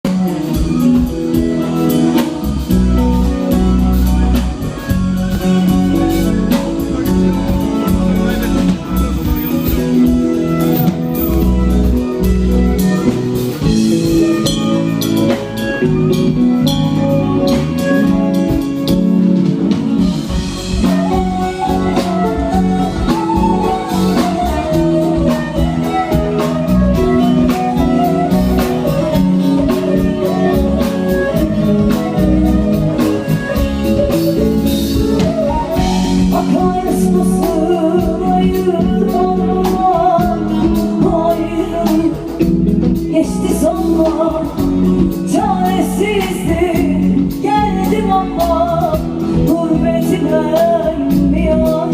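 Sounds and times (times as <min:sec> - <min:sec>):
live band playing: 0:00.0 - 0:51.9
woman singing: 0:19.9 - 0:51.9.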